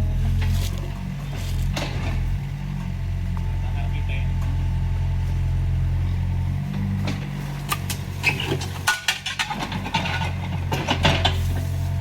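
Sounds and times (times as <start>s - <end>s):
excavator engine hum: 0.0s - 12.0s
bucket clanking and scraping rubble: 7.0s - 12.0s.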